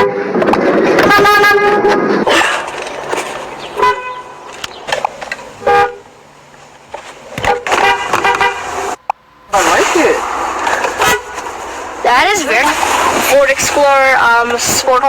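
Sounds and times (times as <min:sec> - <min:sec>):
car horn honking: 0:00.0 - 0:06.2, 0:07.4 - 0:12.2.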